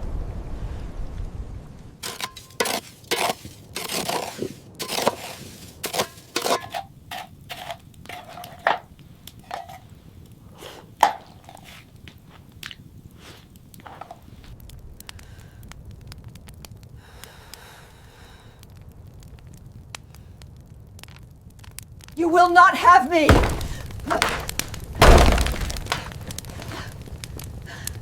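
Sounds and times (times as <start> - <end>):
hard objects knocking and clinking: 4.8 - 9.8, 11.0 - 11.8, 23.3 - 26.8.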